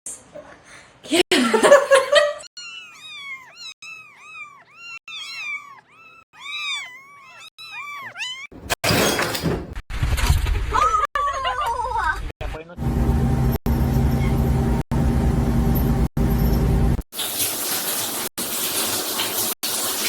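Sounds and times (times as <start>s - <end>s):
kitten mewing: 2.6s - 8.5s.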